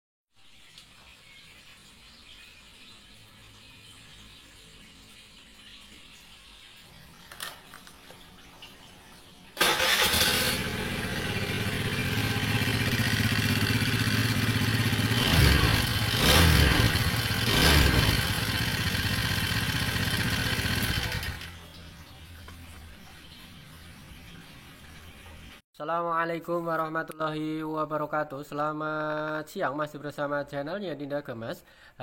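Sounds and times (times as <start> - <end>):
scooter engine running rough: 9.6 - 21.6.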